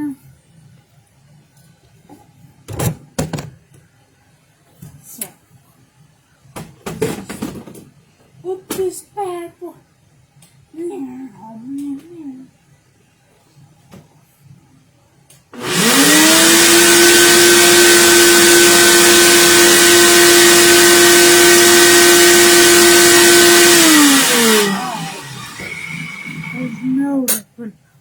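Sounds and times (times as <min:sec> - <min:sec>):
blender motor whine: 0:15.6 - 0:27.0.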